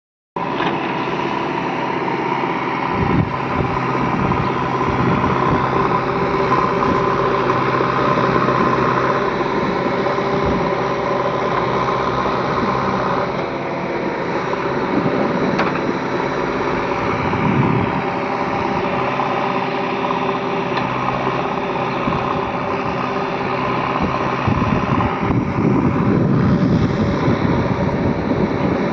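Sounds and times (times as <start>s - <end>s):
diesel engine running: 0.4s - 28.9s.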